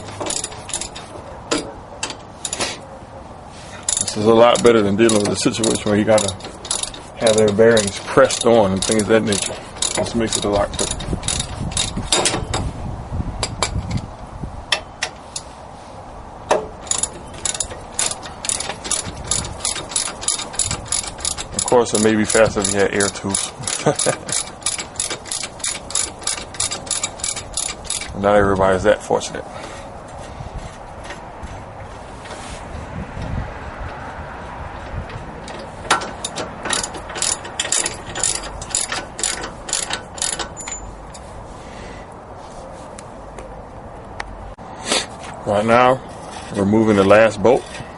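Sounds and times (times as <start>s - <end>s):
socket ratchet clicking: 3.9s - 12.4s, 16.8s - 28.2s, 34.9s - 41.2s.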